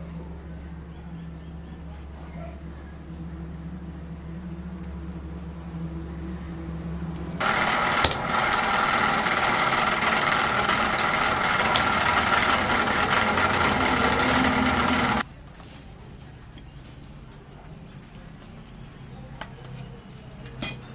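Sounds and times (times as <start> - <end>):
low machine hum: 0.0 - 15.2
loud power tool: 7.4 - 15.2.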